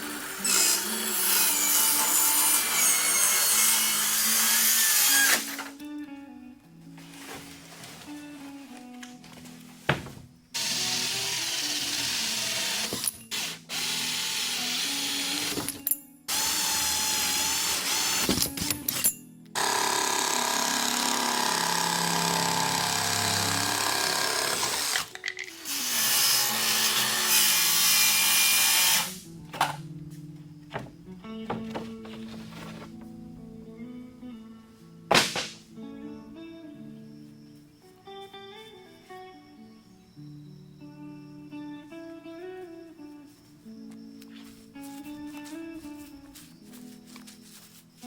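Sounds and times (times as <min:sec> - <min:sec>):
background music: 0:00.0 - 0:48.0
power drill running: 0:10.6 - 0:15.7, 0:16.3 - 0:18.3, 0:19.6 - 0:29.2.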